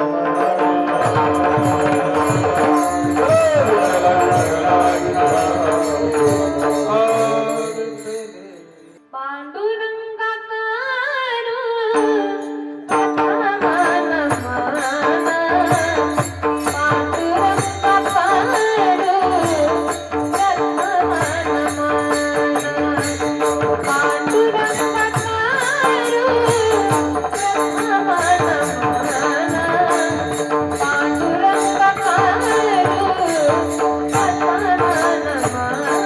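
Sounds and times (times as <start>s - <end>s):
person singing devotional melody: 0.0s - 36.0s
jingling metallic strikes: 0.4s - 8.9s.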